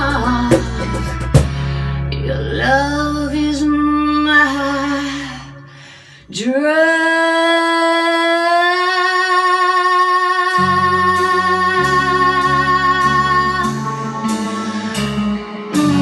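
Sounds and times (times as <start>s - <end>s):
low bass notes: 0.0s - 5.9s, 10.6s - 16.0s
guitar: 0.0s - 16.0s.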